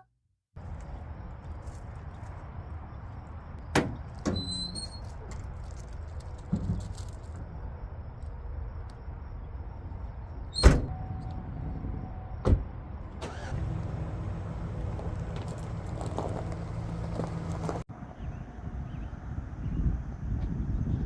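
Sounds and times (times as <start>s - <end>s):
low motor hum: 10.9s - 17.8s.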